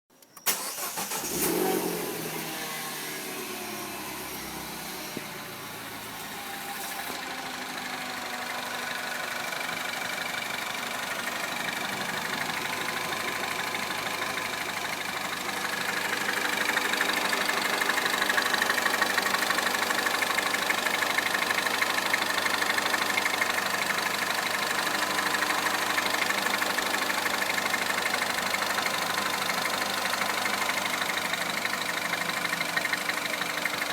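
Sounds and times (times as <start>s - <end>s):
car engine starting and idling: 0.3s - 33.9s.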